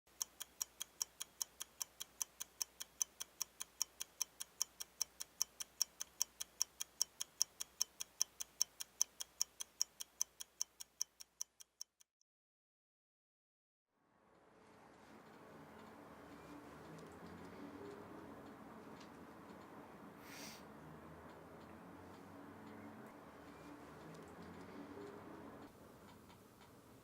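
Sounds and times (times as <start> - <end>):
clockwork ticking: 0.1 - 12.0, 20.7 - 27.0.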